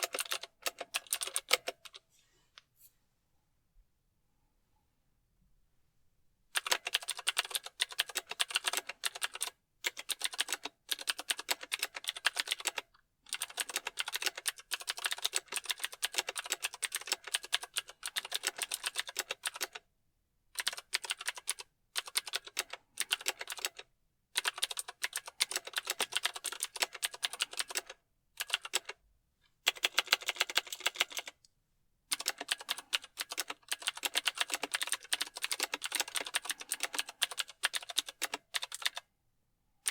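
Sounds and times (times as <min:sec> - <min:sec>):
mechanical keyboard typing: 0:00.0 - 0:02.0, 0:06.6 - 0:19.8, 0:20.6 - 0:23.8, 0:24.4 - 0:29.0, 0:29.7 - 0:31.4, 0:32.1 - 0:39.1.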